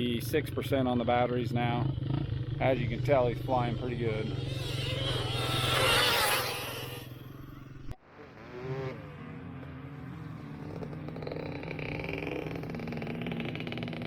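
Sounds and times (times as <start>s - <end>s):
steady low hum: 0.0s - 8.0s
electric motor whine: 2.6s - 8.0s.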